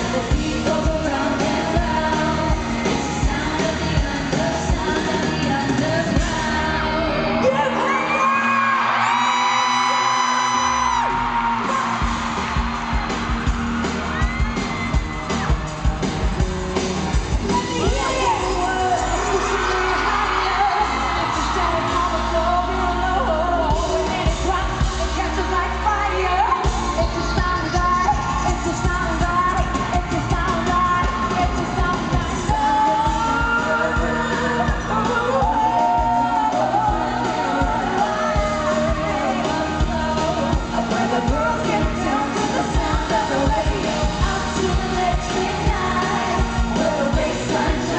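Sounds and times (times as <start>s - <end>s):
women singing: 0.0s - 8.8s, 17.5s - 47.9s
live pop music over pa: 0.0s - 47.9s
steady drum beat: 11.4s - 19.5s, 26.7s - 47.9s.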